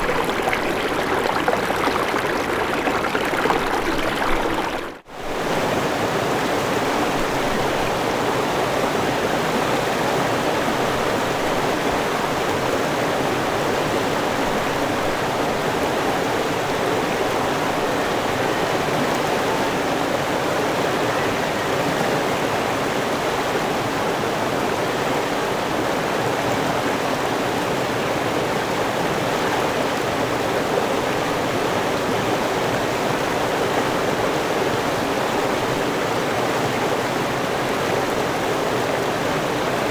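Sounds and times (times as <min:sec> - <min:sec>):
water rushing over rocks: 0:00.0 - 0:05.0.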